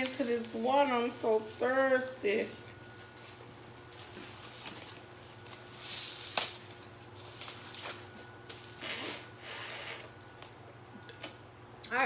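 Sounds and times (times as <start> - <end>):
packaging rustling and crinkling: 0.0 - 8.8.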